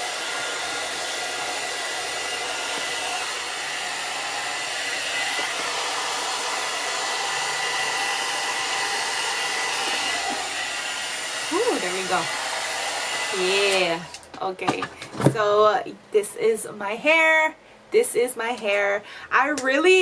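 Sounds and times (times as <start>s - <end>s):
hair dryer airflow hiss: 0.0s - 14.2s.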